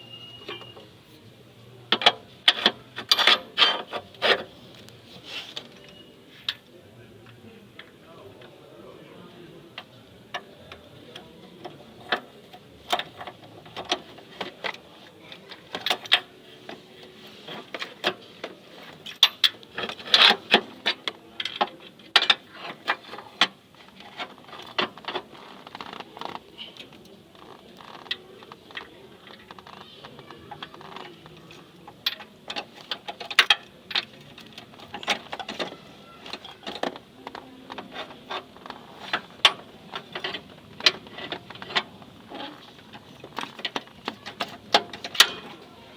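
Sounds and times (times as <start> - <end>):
hand tools clinking on metal: 2.0 - 4.5, 15.5 - 23.2, 30.6 - 45.7.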